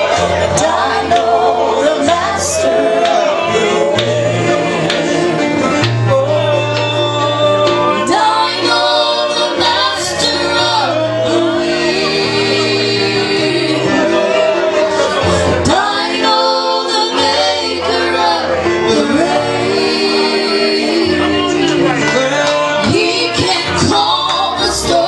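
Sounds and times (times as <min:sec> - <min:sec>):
bass line low notes: 0:00.0 - 0:16.2
band accompaniment: 0:00.0 - 0:25.0
gospel singing: 0:00.0 - 0:25.0.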